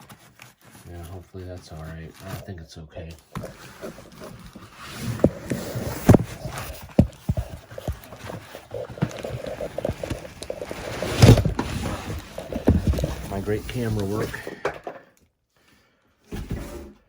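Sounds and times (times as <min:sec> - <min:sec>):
rustling: 0:00.0 - 0:14.5
knocks and thumps on enclosure: 0:05.2 - 0:13.3.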